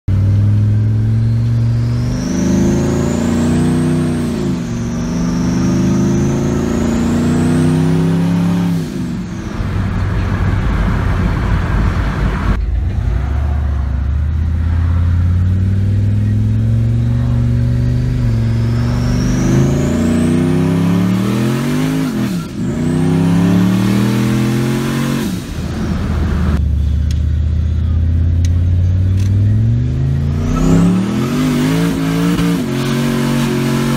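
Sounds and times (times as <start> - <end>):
engine accelerating hard: 0.1 - 33.9.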